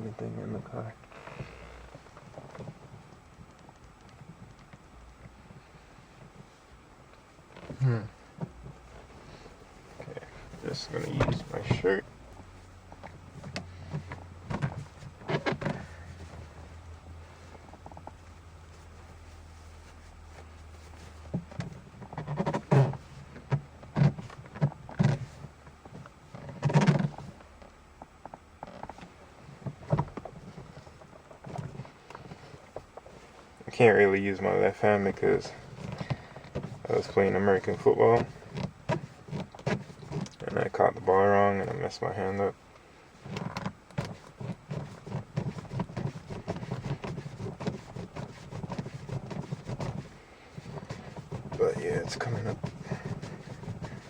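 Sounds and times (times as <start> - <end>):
rustling: 0.6 - 54.0
person grunting: 7.8 - 8.2
fabric rubbing and scuffing: 8.7 - 25.4, 43.2 - 54.0.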